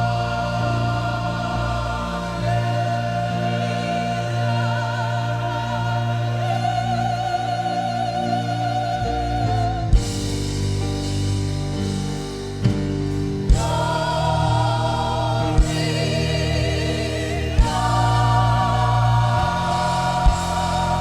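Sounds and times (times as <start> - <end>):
church choir singing: 0.0 - 21.0
low sustained accompaniment: 0.0 - 21.0.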